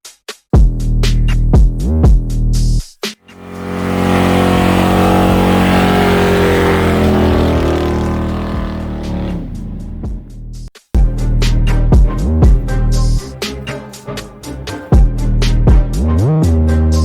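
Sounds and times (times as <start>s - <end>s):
vehicle engine at high revs: 3.2s - 10.3s.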